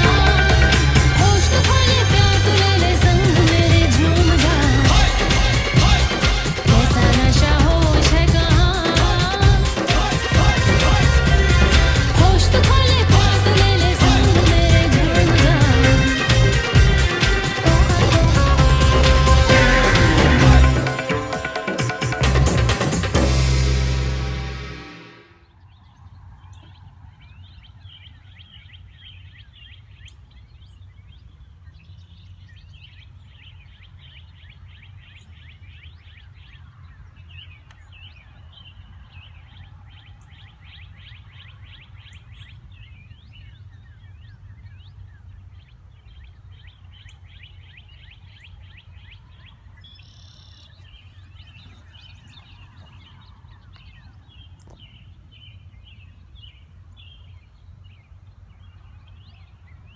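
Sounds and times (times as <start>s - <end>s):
steady low rumble: 0.0s - 21.0s
songbirds chirping and singing: 0.0s - 22.2s, 25.4s - 59.9s.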